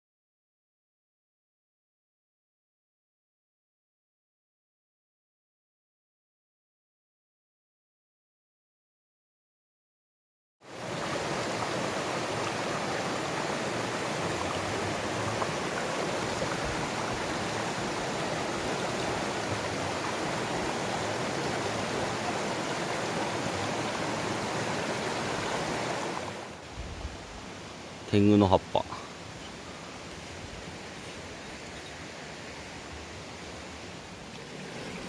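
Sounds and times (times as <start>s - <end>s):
stream water rushing: 10.6s - 35.0s.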